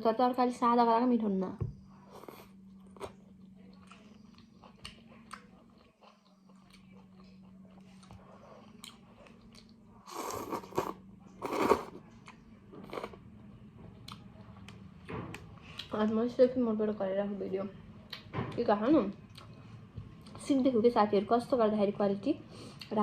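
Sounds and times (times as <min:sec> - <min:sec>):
steady low hum: 0:00.0 - 0:23.0
person chewing noodle soup: 0:02.1 - 0:13.2.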